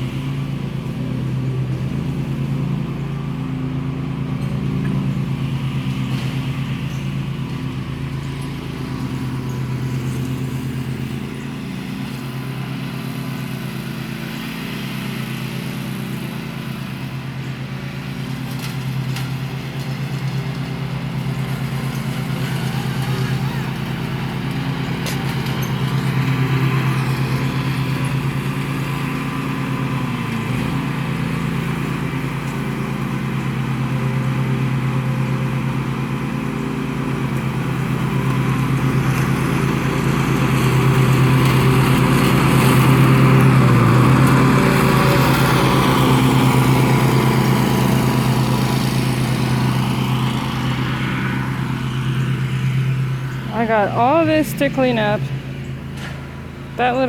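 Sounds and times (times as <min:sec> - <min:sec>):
riding lawnmower engine running: 0:00.0 - 0:57.0.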